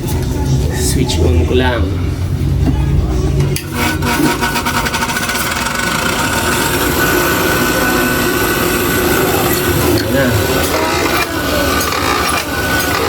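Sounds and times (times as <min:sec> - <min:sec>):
motor starting clatter: 0:03.6 - 0:13.0
sewing machine motor running: 0:03.6 - 0:13.0.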